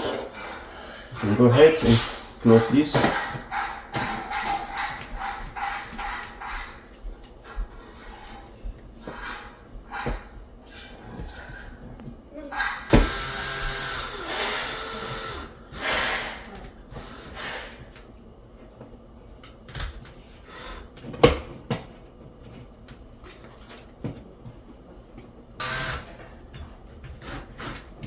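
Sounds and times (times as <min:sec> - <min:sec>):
power drill driving screws: 0:12.9 - 0:17.5, 0:25.6 - 0:27.8.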